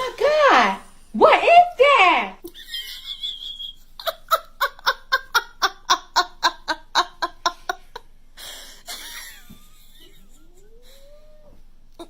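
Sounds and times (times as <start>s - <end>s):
person giggling: 2.4s - 12.0s.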